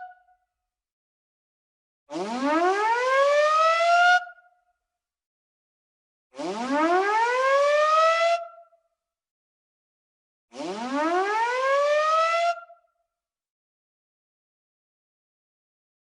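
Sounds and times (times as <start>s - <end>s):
whooping alarm siren: 2.1s - 4.4s, 6.4s - 8.7s, 10.5s - 12.8s.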